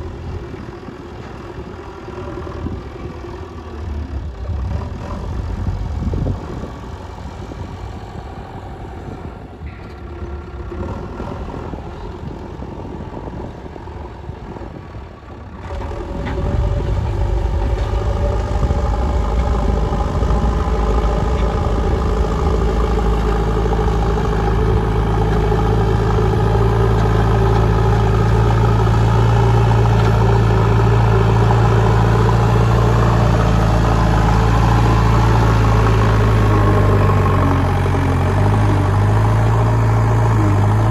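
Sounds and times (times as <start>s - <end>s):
diesel engine running: 0.0s - 40.9s.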